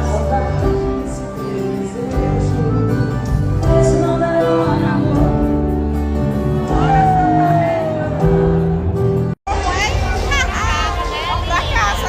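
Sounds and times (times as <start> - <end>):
person singing: 0.0 - 9.1
music accompaniment: 0.0 - 9.4.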